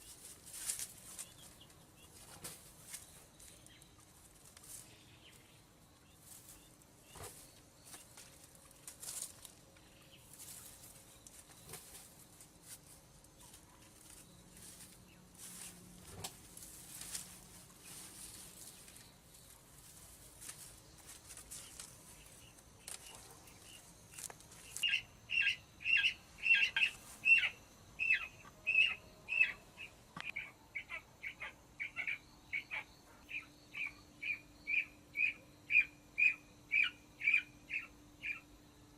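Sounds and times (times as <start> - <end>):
faint rustling: 6.2 - 24.8.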